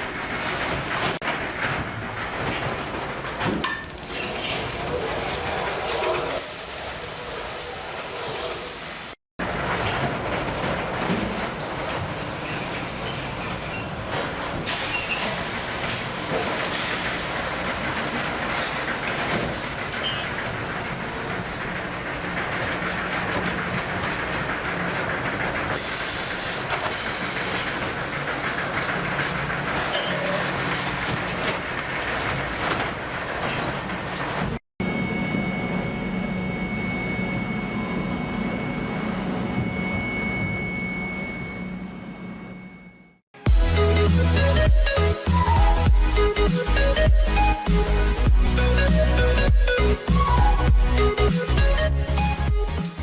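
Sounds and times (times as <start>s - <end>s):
machinery rumbling and clattering: 0.0s - 6.4s, 9.4s - 42.4s, 43.4s - 53.0s
machine running with high whine: 34.8s - 45.1s.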